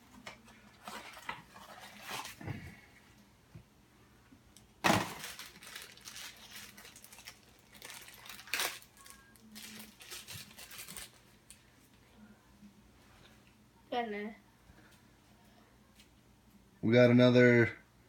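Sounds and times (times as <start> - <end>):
packaging crinkling: 4.9 - 11.6.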